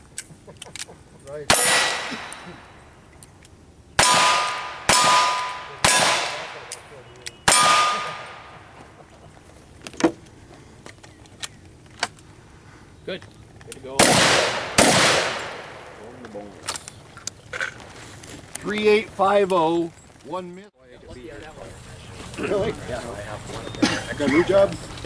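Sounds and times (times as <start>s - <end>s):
gunshots: 1.5s - 2.8s, 4.0s - 8.9s, 14.0s - 16.6s
steel plate ringing: 1.5s - 2.9s, 4.0s - 8.6s.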